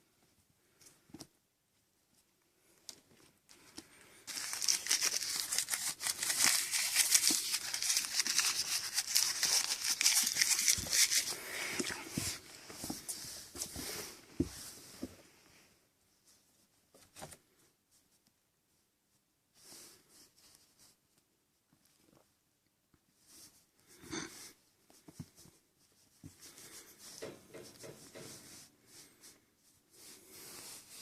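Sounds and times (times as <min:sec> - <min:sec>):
kittens crinkling material: 0:02.0 - 0:14.2.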